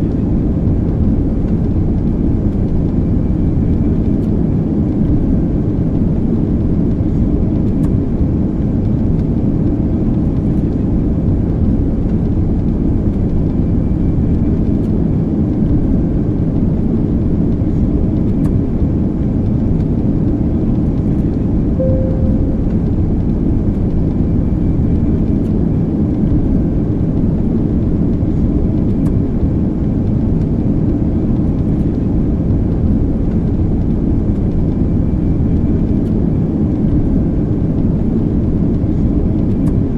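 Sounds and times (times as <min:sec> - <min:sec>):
airplane engine drone: 0:00.0 - 0:39.9
faint tone: 0:21.8 - 0:23.6.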